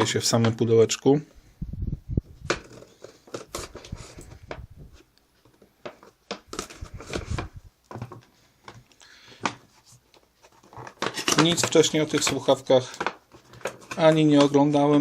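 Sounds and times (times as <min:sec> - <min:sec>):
cardboard and plastic packaging rustling: 0:02.2 - 0:15.0.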